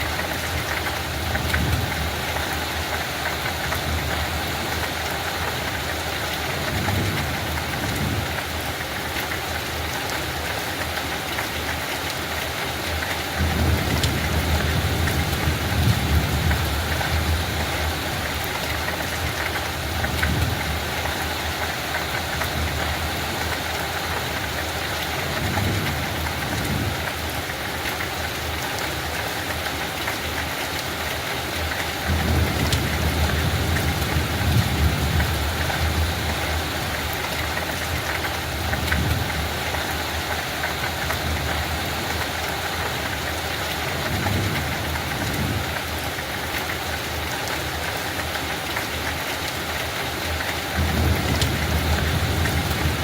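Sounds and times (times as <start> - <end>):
light rain patter: 0.0 - 53.0.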